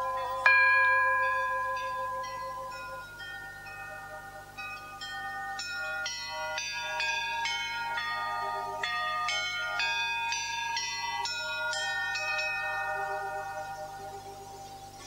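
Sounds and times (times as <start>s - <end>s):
bell-like chime music: 0.0s - 15.0s.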